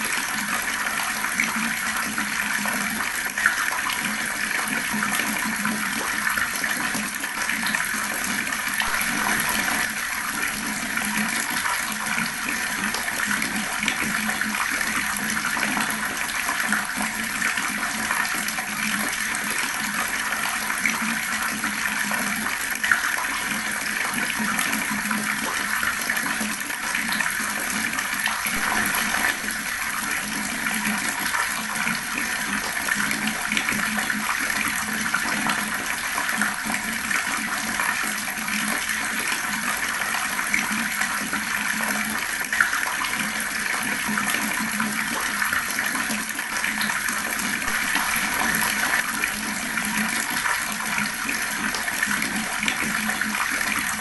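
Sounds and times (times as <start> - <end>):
fast-flowing water rushing: 8.2 - 23.0, 26.9 - 41.9, 42.5 - 54.0.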